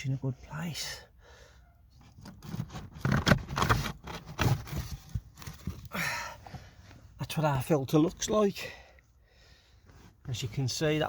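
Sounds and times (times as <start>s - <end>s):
plastic knocks and scraping: 2.0s - 5.9s.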